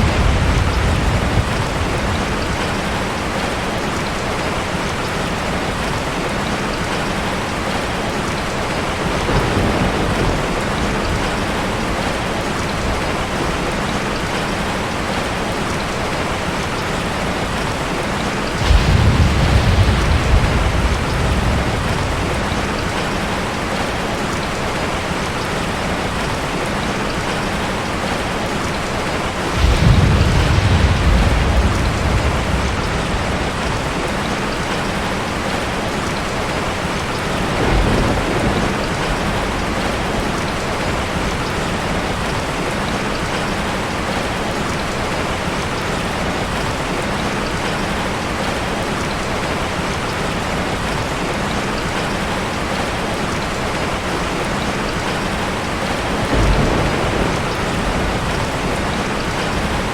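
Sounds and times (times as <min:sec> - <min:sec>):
low rumbles of thunder: 0:00.0 - 0:06.5, 0:07.4 - 0:26.4, 0:28.7 - 0:44.4, 0:53.4 - 0:59.9
steady rain falling: 0:00.0 - 0:59.9.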